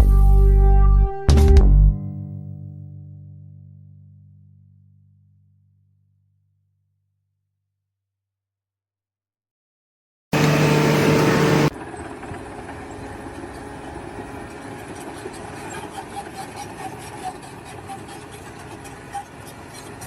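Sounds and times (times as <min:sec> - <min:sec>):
machine engine humming: 0:10.4 - 0:20.0.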